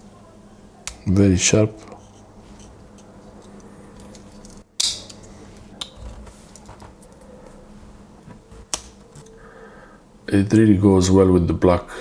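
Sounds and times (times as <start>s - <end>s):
pocket knife clicks: 4.8s - 6.0s.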